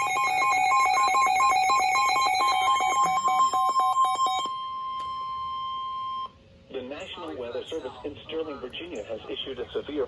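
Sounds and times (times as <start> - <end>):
alarm beeps in two-tone warble: 0.0 - 6.4.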